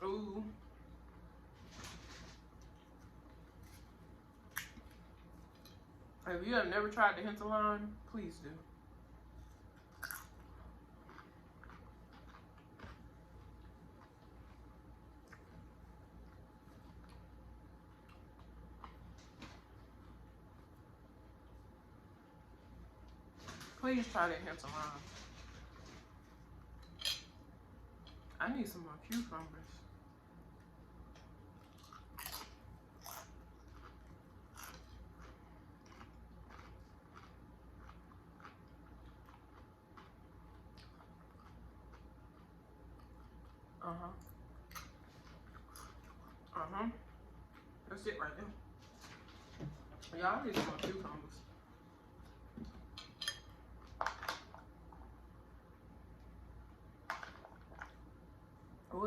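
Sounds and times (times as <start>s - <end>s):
chewing crunchy food: 9.3s - 21.6s, 30.6s - 47.8s
tableware clinking: 26.8s - 27.4s.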